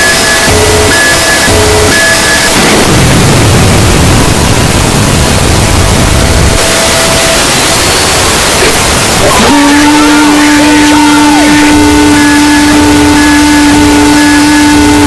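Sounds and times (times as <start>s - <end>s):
distorted static noise: 0.0s - 15.0s
low rumble: 2.6s - 9.4s.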